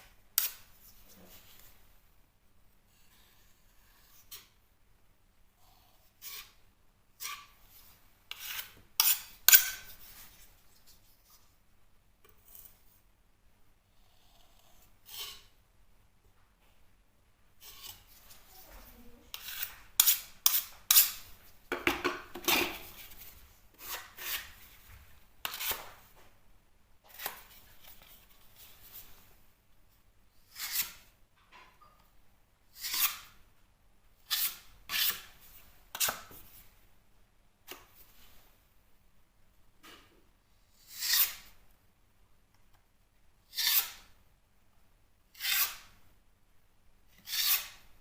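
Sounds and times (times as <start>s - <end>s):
filling knife scraping and knocking: 5.6s - 6.6s, 7.2s - 11.4s, 14.1s - 15.5s, 17.6s - 26.0s.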